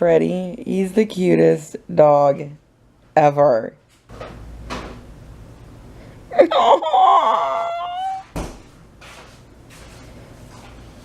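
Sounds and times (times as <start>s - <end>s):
dog whining howl: 6.4s - 8.3s.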